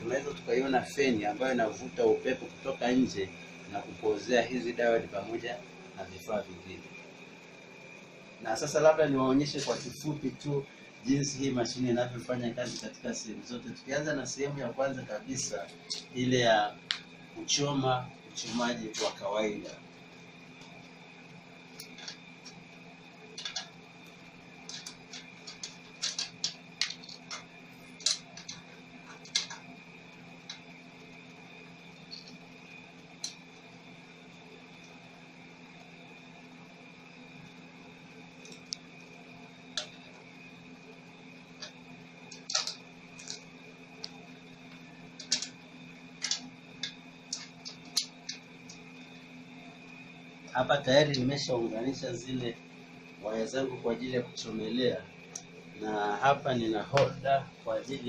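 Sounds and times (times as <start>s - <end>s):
cooling fan: 0.0s - 58.0s
electrical hum: 0.0s - 58.0s
clicks of welding cables and clamps: 24.7s - 29.7s, 41.6s - 43.4s, 46.2s - 48.4s.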